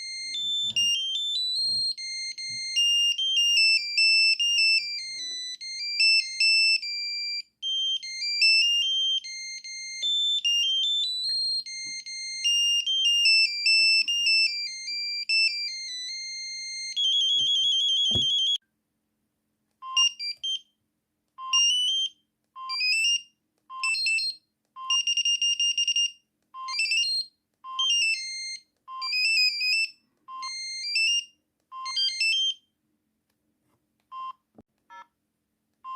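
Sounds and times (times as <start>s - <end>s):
tinny beeping phone melody: 0.0s - 18.6s.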